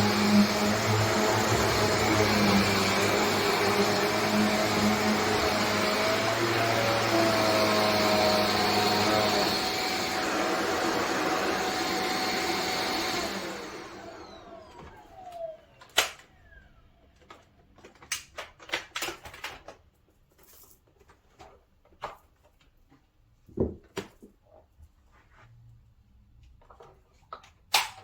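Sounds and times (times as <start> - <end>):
vacuum cleaner motor winding down: 0.0 - 17.2
clicks and knocks of handling: 17.2 - 24.4.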